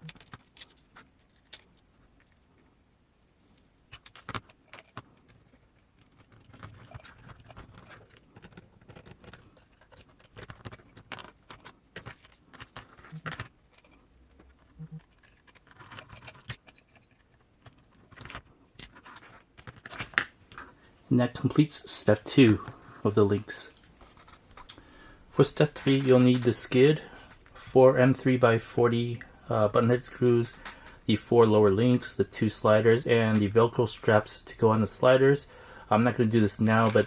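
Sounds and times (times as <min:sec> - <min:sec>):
soft handling noise: 0:00.0 - 0:37.0
clicks and rattles of small screws: 0:03.9 - 0:20.6.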